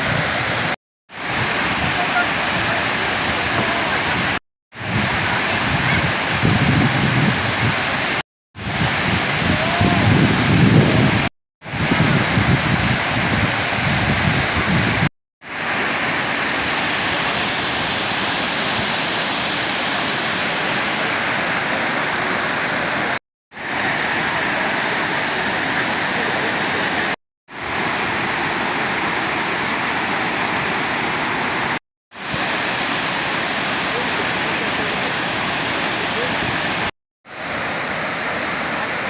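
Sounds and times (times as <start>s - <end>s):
wind rumble on microphone: 0.0s - 15.1s
waterfall rushing: 0.0s - 39.0s.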